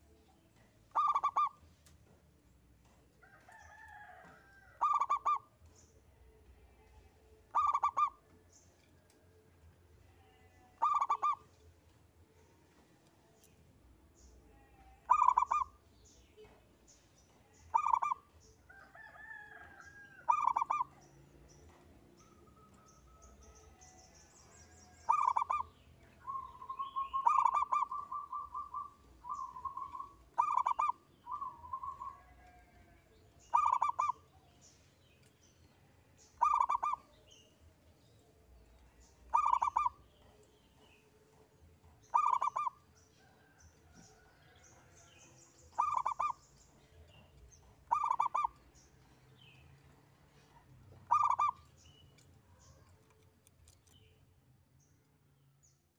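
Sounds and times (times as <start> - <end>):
dove cooing: 0.9 - 1.6, 4.8 - 5.5, 7.5 - 8.2, 10.8 - 11.4, 15.0 - 15.8, 17.7 - 18.2, 20.3 - 21.0, 25.1 - 25.7, 26.3 - 32.6, 33.5 - 34.2, 36.4 - 37.0, 39.3 - 40.0, 42.1 - 42.8, 45.7 - 46.4, 47.9 - 48.6, 51.0 - 51.7.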